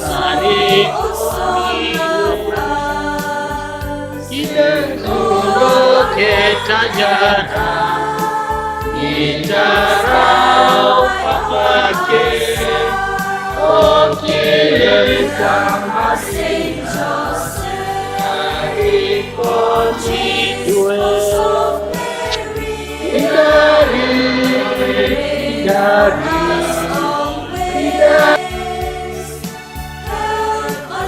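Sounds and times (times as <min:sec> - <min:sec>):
choir and congregation singing: 0:00.0 - 0:31.0
percussive beat: 0:04.3 - 0:28.4.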